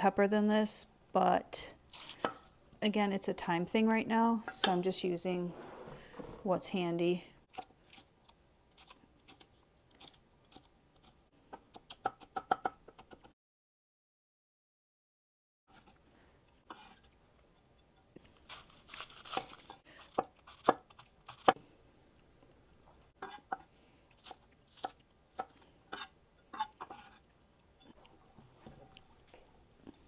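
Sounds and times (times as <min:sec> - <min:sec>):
knife chopping vegetables: 0:19.2 - 0:21.6.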